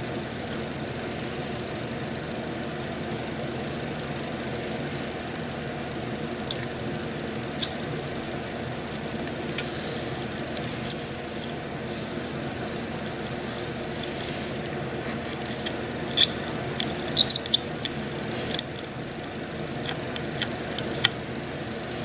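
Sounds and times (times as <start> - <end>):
steady low hum: 0.0 - 22.0
hand tools clicking and tapping: 15.4 - 21.1.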